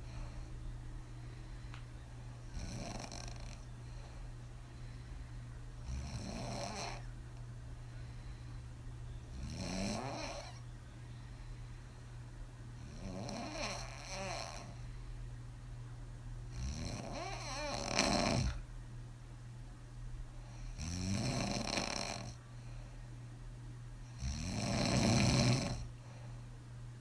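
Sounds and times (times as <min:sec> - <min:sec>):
steady low hum: 0:00.0 - 0:27.0
woman snoring: 0:02.4 - 0:03.7, 0:05.8 - 0:07.1, 0:09.3 - 0:10.6, 0:12.8 - 0:14.8, 0:16.5 - 0:18.6, 0:20.6 - 0:22.4, 0:24.1 - 0:25.9.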